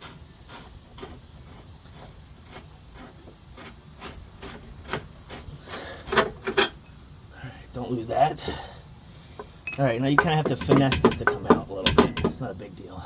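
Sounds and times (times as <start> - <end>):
sharp metal clinks: 6.7 - 7.1, 9.4 - 13.0
hand tools clicking: 9.4 - 12.8.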